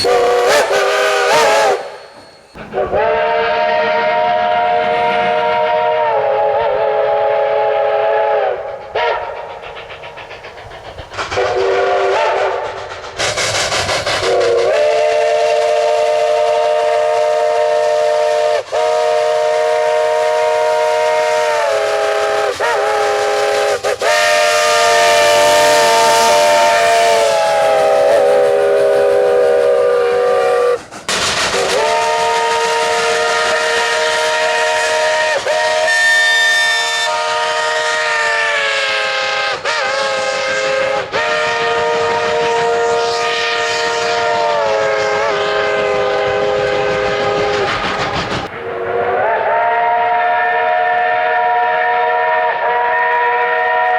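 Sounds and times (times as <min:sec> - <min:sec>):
steam locomotive chime whistle: 0:00.0 - 0:09.7, 0:11.4 - 0:12.8, 0:14.2 - 0:30.9, 0:31.5 - 0:53.9
steam hiss: 0:00.0 - 0:53.9.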